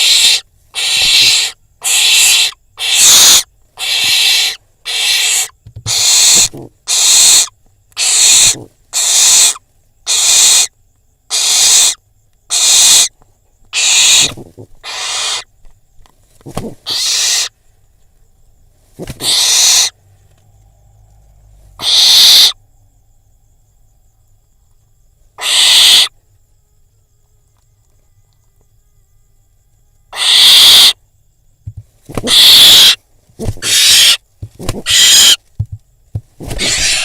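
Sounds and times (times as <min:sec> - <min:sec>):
barn owl screeching: 0:00.0 - 0:10.7, 0:11.3 - 0:15.5, 0:16.4 - 0:17.6, 0:19.0 - 0:20.0, 0:21.8 - 0:22.6, 0:25.4 - 0:26.1, 0:30.1 - 0:31.0, 0:32.1 - 0:35.5, 0:36.4 - 0:37.0.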